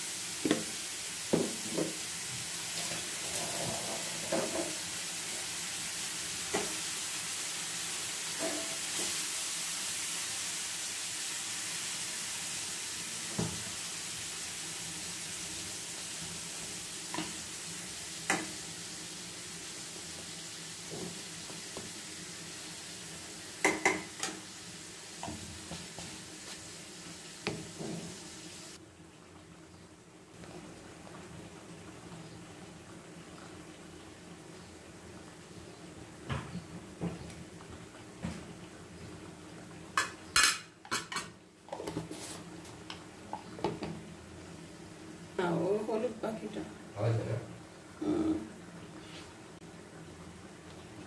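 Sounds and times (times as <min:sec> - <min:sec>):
food sizzling in a pan: 0:00.0 - 0:51.0.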